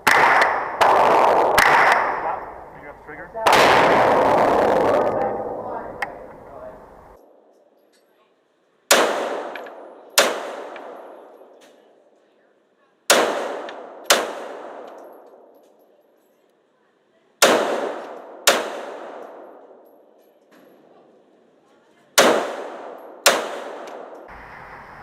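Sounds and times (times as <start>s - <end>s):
gunshots with echoing decay: 0.0s - 7.5s, 8.9s - 12.2s, 13.1s - 15.8s, 17.4s - 20.2s, 22.2s - 24.3s.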